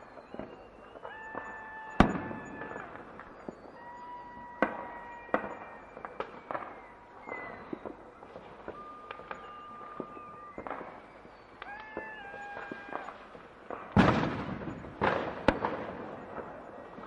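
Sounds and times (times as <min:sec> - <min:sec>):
high whistling tones: 0:00.0 - 0:13.2
fireworks bangs: 0:00.0 - 0:17.0
fireworks pops and crackles: 0:00.0 - 0:17.0.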